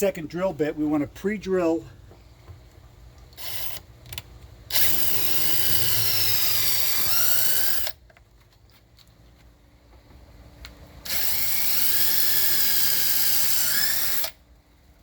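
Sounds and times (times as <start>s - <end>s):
power drill spinning: 3.4s - 3.9s, 4.7s - 8.0s, 11.0s - 14.4s.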